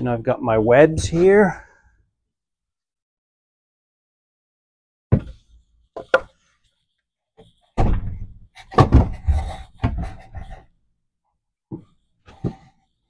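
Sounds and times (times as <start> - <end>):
wooden pieces knocking and clattering: 6.0 - 6.4.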